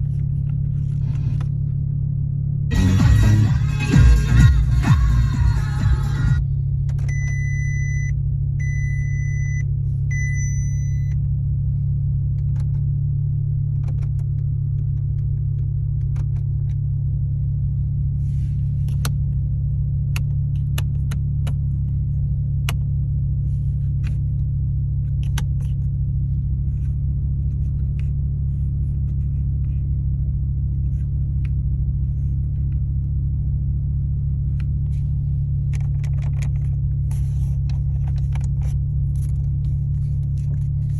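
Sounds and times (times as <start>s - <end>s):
car engine low rumble: 0.0s - 40.9s.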